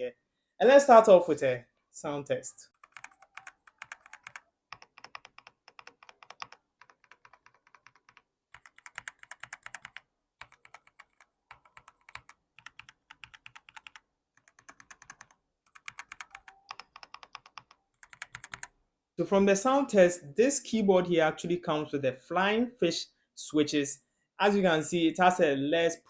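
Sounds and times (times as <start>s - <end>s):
mechanical keyboard typing: 2.8s - 18.7s.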